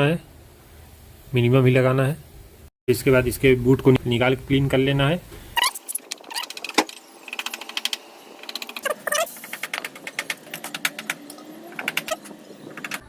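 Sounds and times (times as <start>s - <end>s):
scrubbing brake parts: 5.5s - 13.0s
short squeak: 5.6s - 7.0s, 8.8s - 9.4s.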